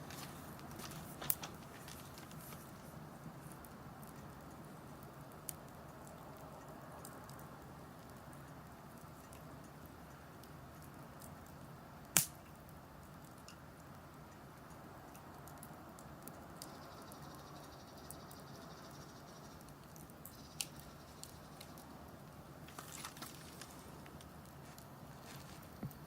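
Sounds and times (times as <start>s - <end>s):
wood fire crackling: 0.0s - 26.0s
fire hissing: 19.2s - 25.9s.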